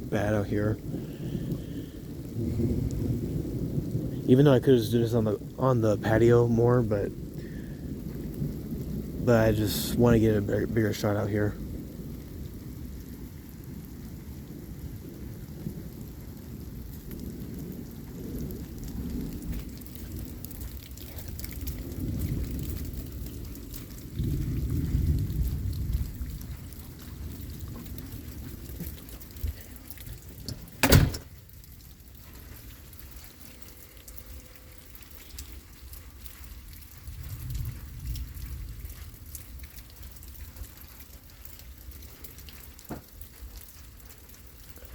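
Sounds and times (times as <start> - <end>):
low rumble of thunder: 0.0 - 44.9
steady rain falling: 0.0 - 44.9.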